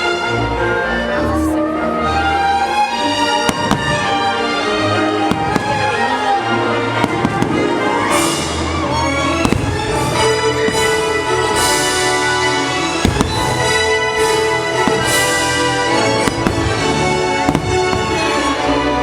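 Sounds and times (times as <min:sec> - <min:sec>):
orchestral music: 0:00.0 - 0:19.0
fireworks bangs and pops: 0:03.5 - 0:04.3, 0:05.3 - 0:06.0, 0:07.0 - 0:08.6, 0:09.4 - 0:12.1, 0:12.8 - 0:18.6.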